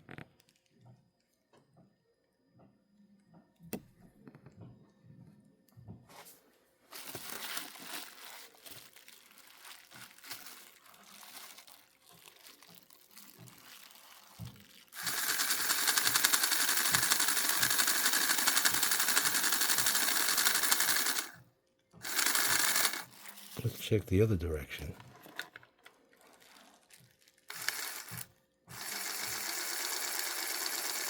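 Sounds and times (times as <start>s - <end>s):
model locomotive motor rattling: 14.9s - 21.4s, 22.0s - 23.6s, 27.5s - 31.0s.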